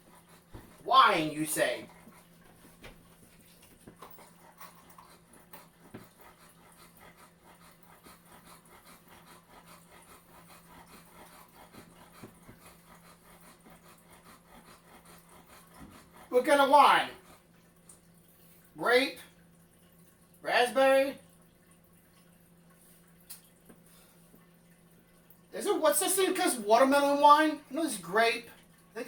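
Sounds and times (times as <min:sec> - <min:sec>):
rapid rhythmic panting: 0:00.0 - 0:17.7.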